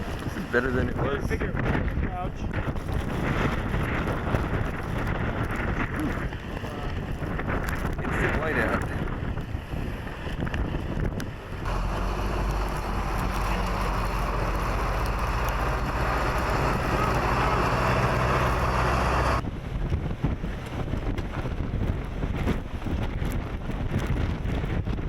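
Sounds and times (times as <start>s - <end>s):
wind blowing across microphone: 0.0s - 25.0s
low hum: 11.3s - 19.8s.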